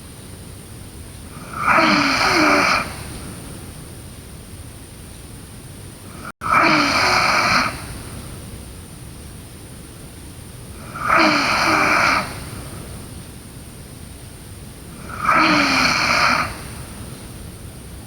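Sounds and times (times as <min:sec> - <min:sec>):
steady hiss: 0:00.0 - 0:18.0
girl snoring: 0:01.4 - 0:03.1, 0:06.1 - 0:08.0, 0:10.8 - 0:12.8, 0:14.9 - 0:17.0.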